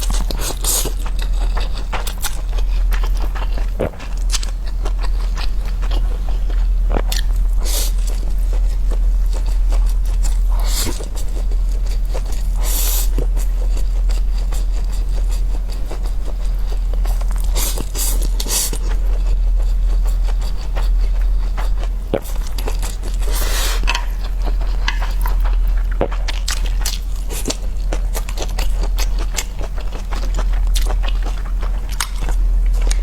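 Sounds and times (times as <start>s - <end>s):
steady low hum: 0.0s - 33.0s
chopsticks scraping a dish: 22.8s - 25.4s.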